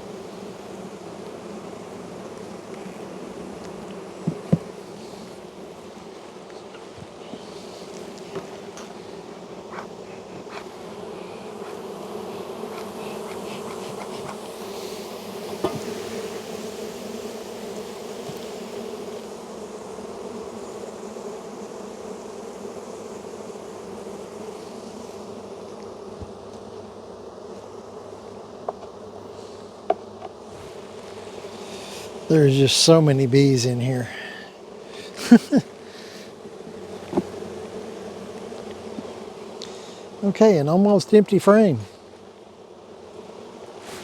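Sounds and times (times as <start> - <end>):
honey bees buzzing: 0.0 - 44.0
light knocks: 15.5 - 16.0.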